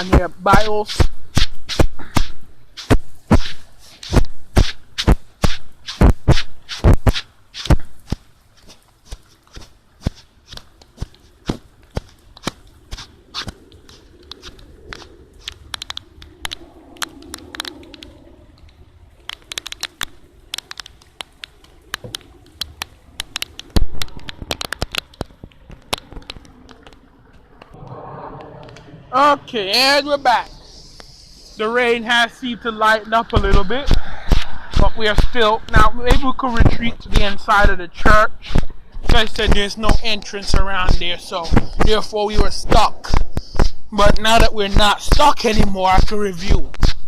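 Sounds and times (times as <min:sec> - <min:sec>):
rain hiss: 0:00.0 - 0:47.0
raindrops tapping on hard surfaces: 0:05.0 - 0:27.8
sharp knocks and thumps: 0:19.3 - 0:22.2.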